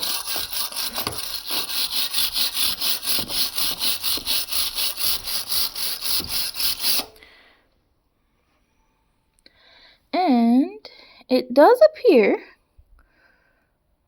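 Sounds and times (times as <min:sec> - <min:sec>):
hand tool scraping a weld: 0:00.0 - 0:07.2.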